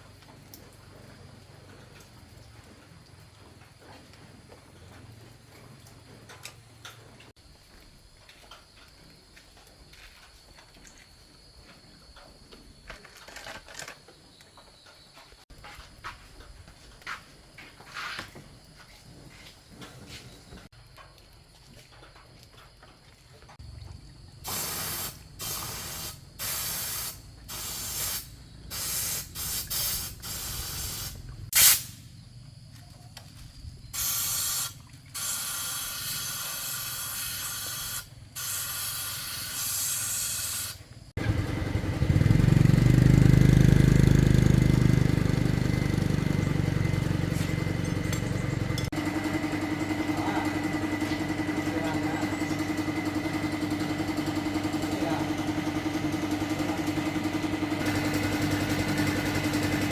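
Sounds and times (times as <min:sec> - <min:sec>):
spraying hiss bursts: 0:24.4 - 0:32.0, 0:34.0 - 0:40.9
motorbike engine running: 0:41.2 - 0:59.9.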